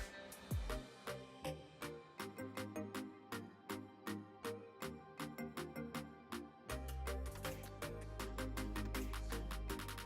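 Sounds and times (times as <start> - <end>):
background music with drum beat: 0.0 - 1.4, 6.7 - 10.0.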